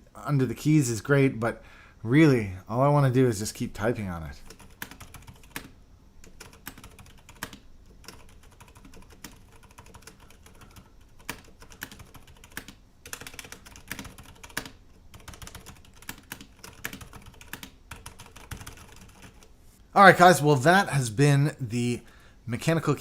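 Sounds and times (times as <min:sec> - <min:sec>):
mechanical keyboard typing: 0:04.4 - 0:19.5.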